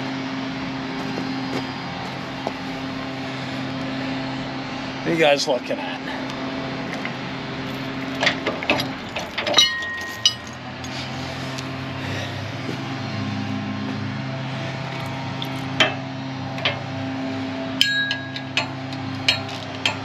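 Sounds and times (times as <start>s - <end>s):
steady low hum: 0.0s - 20.0s
metal tools clinking: 7.7s - 11.1s, 17.8s - 20.0s.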